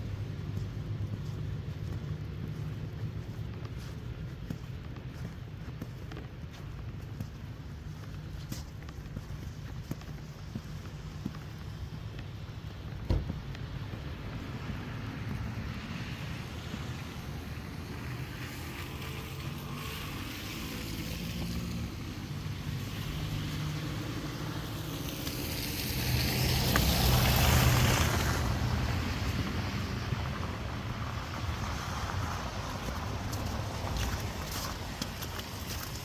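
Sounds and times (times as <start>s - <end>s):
low traffic rumble: 0.0s - 36.0s
car passing with tyre hiss: 14.4s - 36.0s.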